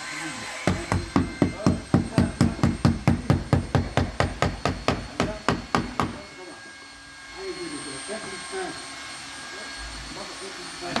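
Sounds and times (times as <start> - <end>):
hammer tapping rapidly: 0.7 - 6.2.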